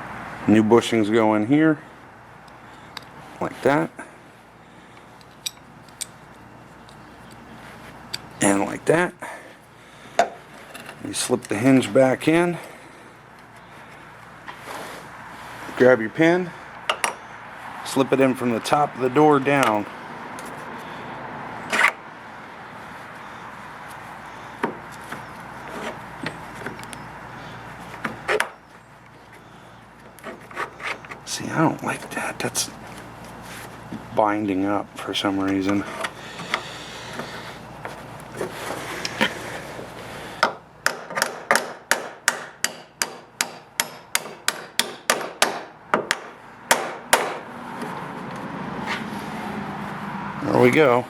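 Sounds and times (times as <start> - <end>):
hammer striking metal pin: 40.4 - 47.4.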